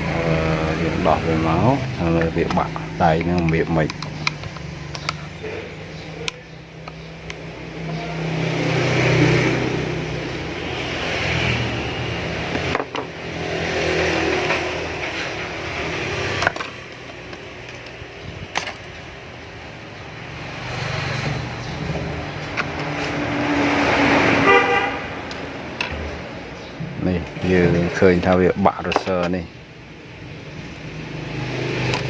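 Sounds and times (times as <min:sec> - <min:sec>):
vehicles passing: 0:00.0 - 0:32.0
sharp clicks: 0:02.2 - 0:05.2.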